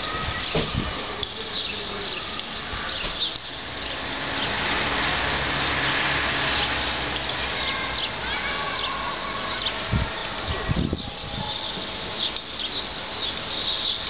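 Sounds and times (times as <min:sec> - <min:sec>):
birds chirping: 0:00.0 - 0:14.0
strong wind gust rushing: 0:09.8 - 0:11.6.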